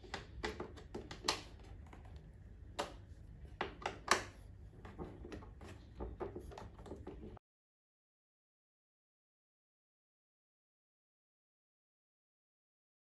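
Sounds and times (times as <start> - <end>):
plastic parts clicking and knocking: 0.0 - 7.4.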